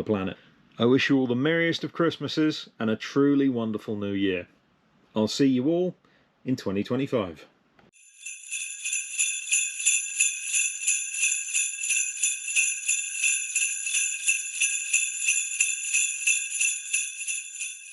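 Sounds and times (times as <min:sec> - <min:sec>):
jingle bells shaken: 0:08.0 - 0:17.9.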